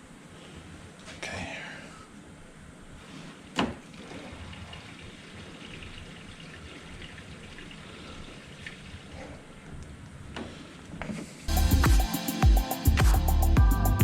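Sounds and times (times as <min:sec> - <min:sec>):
faint trickle of coolant: 0:03.9 - 0:09.7.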